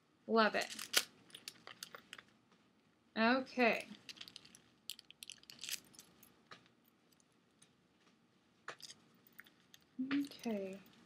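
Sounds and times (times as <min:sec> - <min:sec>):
wallet clicks and rustles: 0:00.6 - 0:02.3, 0:03.9 - 0:06.2.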